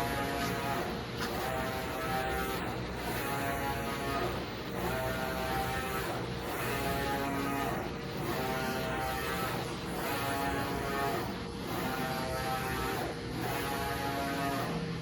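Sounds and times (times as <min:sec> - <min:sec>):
printer carriage motor whining: 0:00.0 - 0:14.8.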